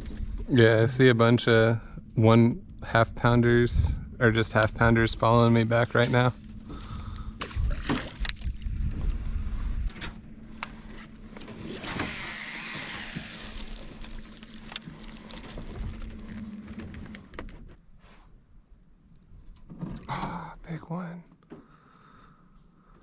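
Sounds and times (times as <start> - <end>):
electric motor humming: 4.3 - 17.6
hiss: 11.8 - 13.8.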